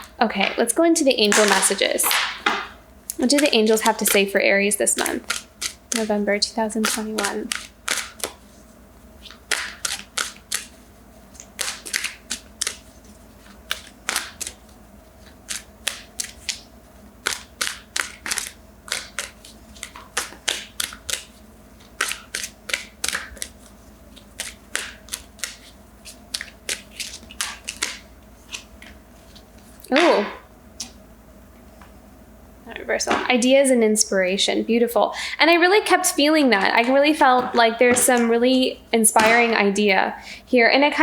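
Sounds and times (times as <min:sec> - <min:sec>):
cards being shuffled: 0:01.3 - 0:06.2, 0:06.8 - 0:31.0.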